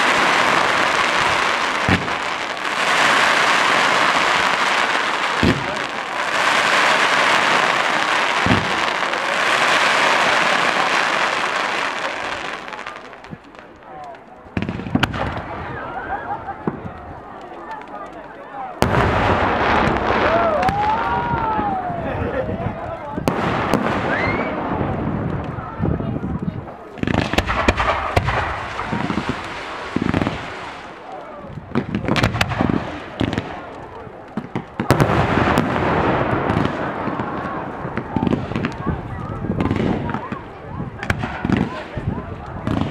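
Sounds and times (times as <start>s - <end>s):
fireworks hissing: 0.0s - 13.4s, 27.0s - 31.1s
deep fireworks booms: 0.0s - 13.8s, 14.5s - 18.1s, 18.7s - 42.9s
fireworks crackling: 0.0s - 42.9s.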